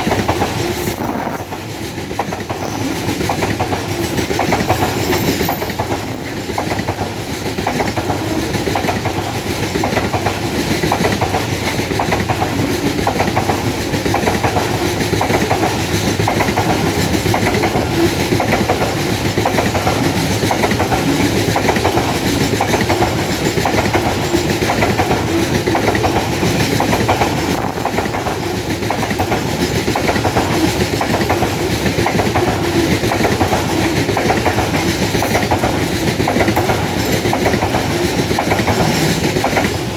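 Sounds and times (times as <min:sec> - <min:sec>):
freight train wheels clattering: 0:00.0 - 0:39.9.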